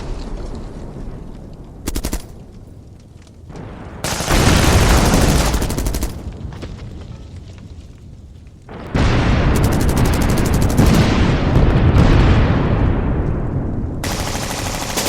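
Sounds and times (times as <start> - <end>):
heavy rumble: 0.0 - 15.0
machine-gun bursts: 1.9 - 2.4, 4.0 - 6.2, 14.0 - 15.0.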